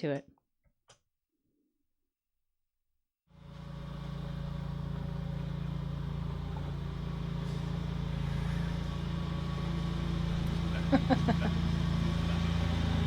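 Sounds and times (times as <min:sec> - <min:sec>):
engine idling: 0:03.3 - 0:13.0.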